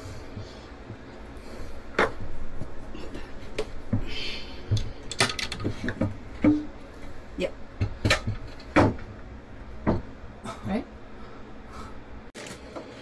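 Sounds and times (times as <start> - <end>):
wooden panels knocking and clicking: 4.7 - 6.8.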